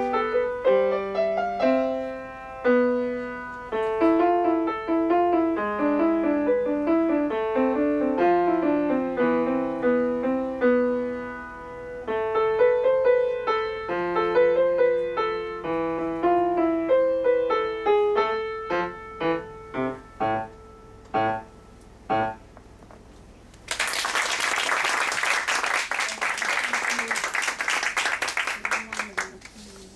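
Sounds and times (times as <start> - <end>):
solo piano: 0.0 - 22.9.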